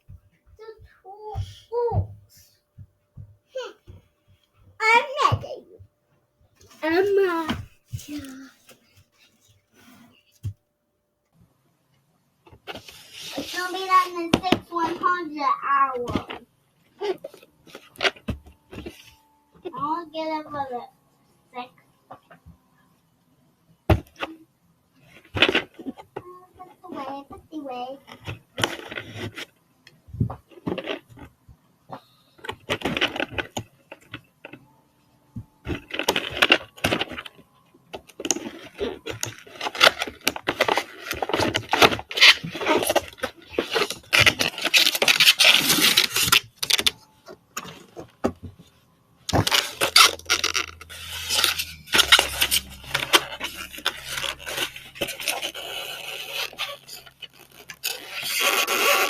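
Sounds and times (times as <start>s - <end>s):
small hard objects clattering: 38.2s - 47.0s, 49.3s - 59.0s.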